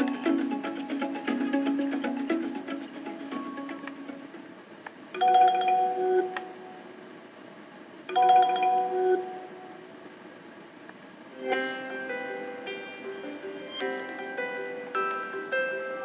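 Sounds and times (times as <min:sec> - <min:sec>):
desk phone ringtone: 0:05.2 - 0:06.4, 0:08.1 - 0:09.4.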